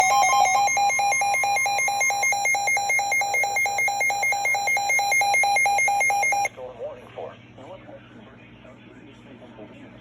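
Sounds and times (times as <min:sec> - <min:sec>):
steady high tone: 0:00.0 - 0:06.5
warbling electronic alarm tone: 0:00.0 - 0:06.5.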